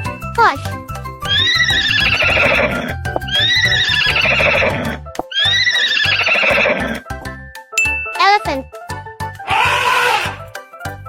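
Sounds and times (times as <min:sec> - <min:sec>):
background music with steady beat: 0:00.0 - 0:11.0
animal call with quavering edge: 0:05.3 - 0:06.6, 0:09.5 - 0:10.4.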